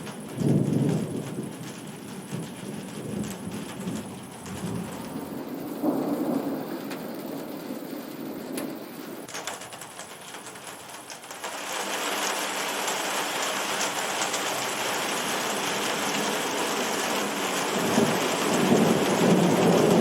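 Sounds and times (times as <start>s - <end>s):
thunder rumbling: 0.0s - 9.9s, 14.3s - 20.0s
heavy rain: 0.0s - 20.0s.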